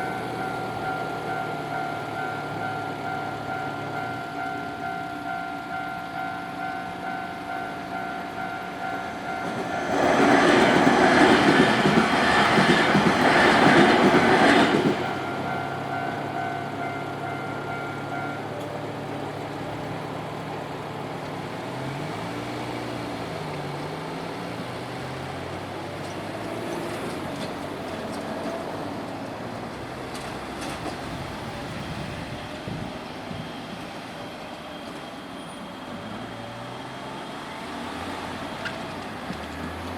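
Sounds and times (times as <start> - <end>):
level crossing warning bell: 0.0 - 19.9
road traffic noise: 0.0 - 39.9
train wheels on rails: 0.0 - 39.9.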